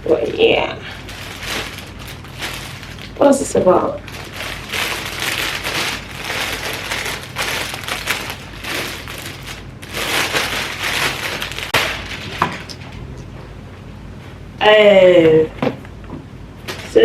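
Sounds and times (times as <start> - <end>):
packaging rustling and crinkling: 1.0 - 12.9.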